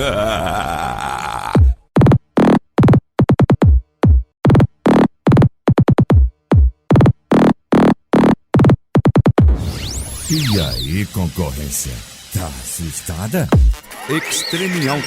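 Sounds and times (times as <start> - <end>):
chopped synth-bass stabs: 9.3 - 15.0.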